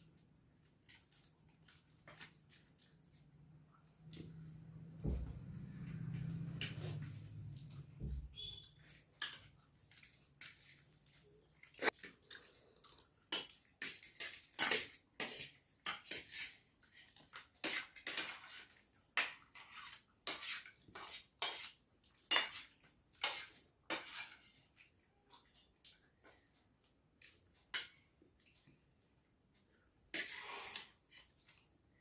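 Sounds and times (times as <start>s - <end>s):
cutlery scraping a plate: 8.4s - 9.6s, 13.3s - 24.6s, 30.1s - 31.5s.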